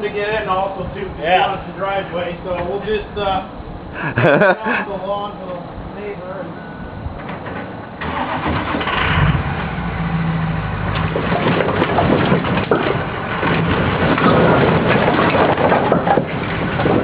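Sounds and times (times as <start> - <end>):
heavy machine engine running: 6.5 - 17.0
wood clattering and knocking: 10.9 - 17.0.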